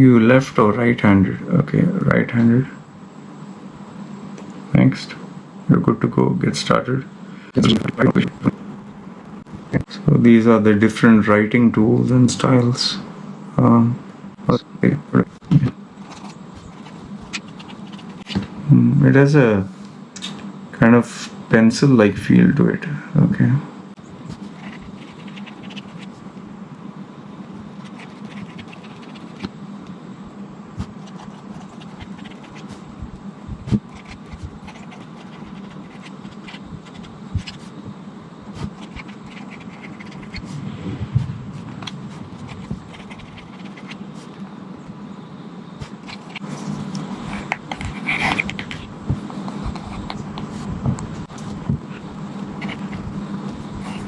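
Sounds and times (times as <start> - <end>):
steady low hum: 0.0 - 54.0
stylus scratching and tapping screen: 7.6 - 9.9, 16.0 - 18.4, 24.3 - 26.2, 27.8 - 29.5, 30.8 - 37.7, 38.5 - 44.4, 45.8 - 54.0.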